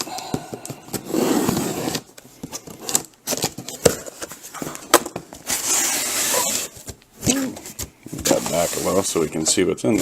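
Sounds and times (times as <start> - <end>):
cardboard and packaging rustling: 0.0 - 10.0
cardboard tearing scrape: 1.1 - 2.1, 5.4 - 6.8.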